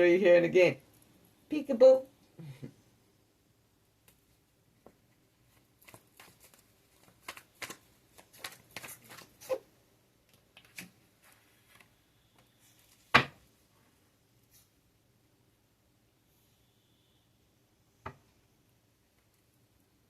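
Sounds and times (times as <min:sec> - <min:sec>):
cards being shuffled: 0:05.5 - 0:09.6.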